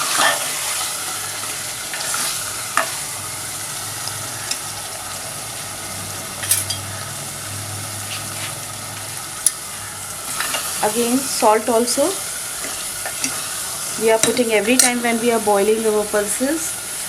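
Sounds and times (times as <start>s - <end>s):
onion masala sizzling in ghee: 0.0s - 17.0s.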